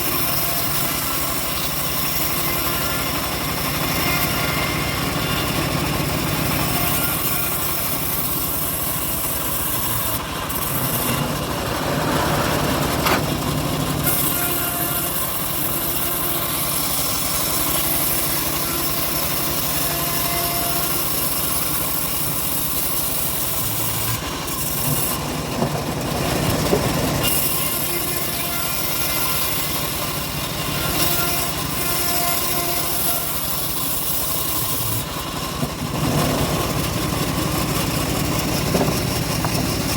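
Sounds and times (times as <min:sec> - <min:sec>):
band blade rasping through wood: 0:00.0 - 0:39.9
drive engine running: 0:08.4 - 0:14.6, 0:23.6 - 0:27.2, 0:34.5 - 0:39.9.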